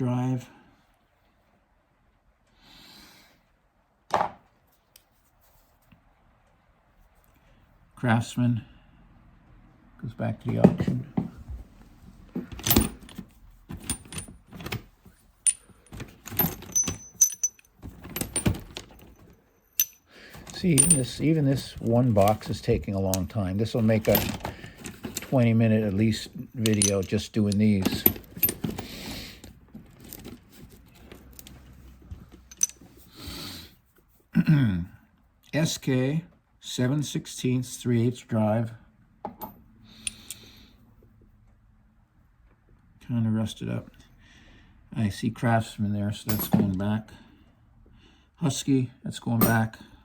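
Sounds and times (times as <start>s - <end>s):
soft rustle: 4.6s - 6.1s
steel sockets clinking: 12.5s - 13.2s, 13.8s - 28.8s, 32.4s - 32.8s, 39.4s - 40.5s.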